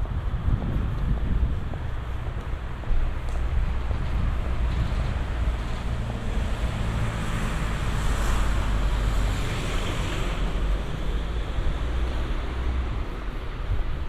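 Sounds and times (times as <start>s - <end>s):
constant low traffic rumble: 0.0s - 14.0s
vehicle passing: 3.7s - 13.7s.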